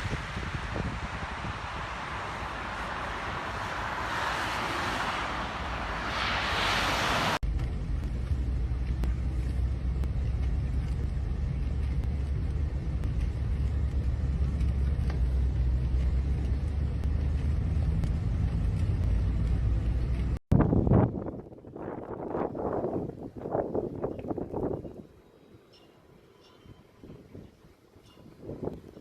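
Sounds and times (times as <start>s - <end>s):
steady low rumble: 0.0s - 21.6s.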